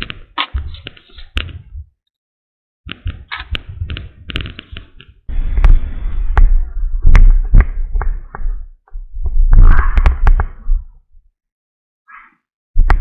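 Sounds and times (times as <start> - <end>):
vinyl crinkling and rustling: 0.0 - 1.7.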